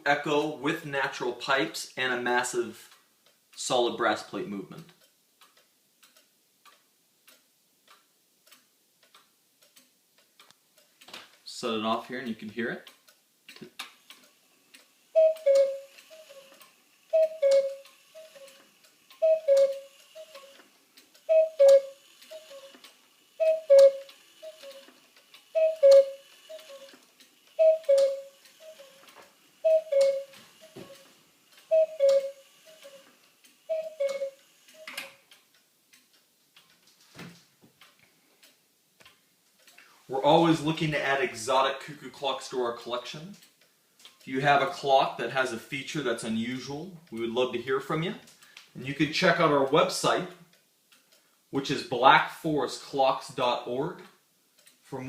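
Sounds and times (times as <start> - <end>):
clock ticking faintly: 0.0 - 37.1, 37.7 - 55.0
clock mechanism click: 4.8 - 36.8
cuckoo clock calling: 14.2 - 35.5.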